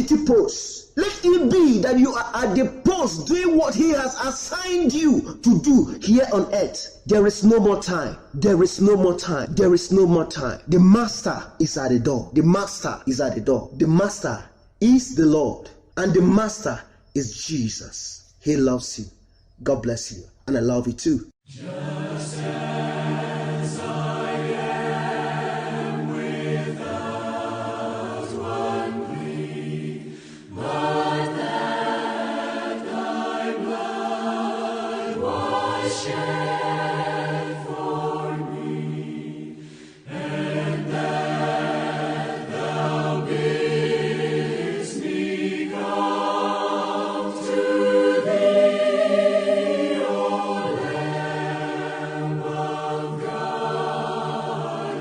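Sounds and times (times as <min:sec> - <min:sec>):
choir singing: 0:00.0 - 0:06.6, 0:21.4 - 0:55.0.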